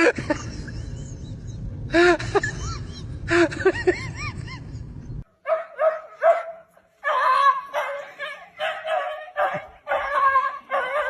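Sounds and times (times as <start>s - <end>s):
background rumble: 0.0s - 5.2s
dog yipping and barking: 5.4s - 11.0s.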